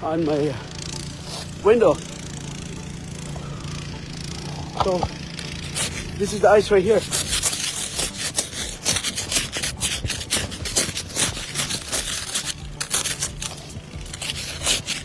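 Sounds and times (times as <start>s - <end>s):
ice scraper scraping car window: 0.3s - 2.0s, 4.7s - 15.0s.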